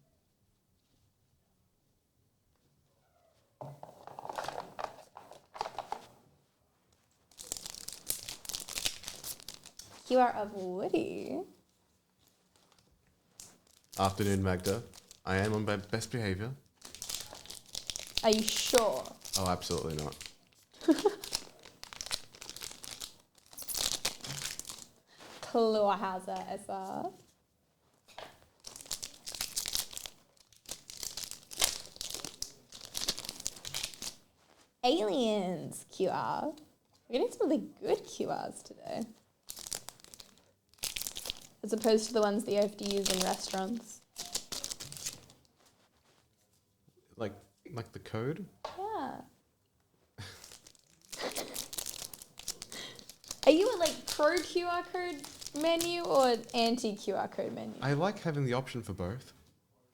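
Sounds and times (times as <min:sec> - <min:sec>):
card pack wrapper crinkling: 0:04.2 - 0:06.1, 0:07.3 - 0:10.1, 0:12.5 - 0:25.4, 0:28.5 - 0:34.3, 0:39.4 - 0:45.5, 0:50.2 - 0:57.1.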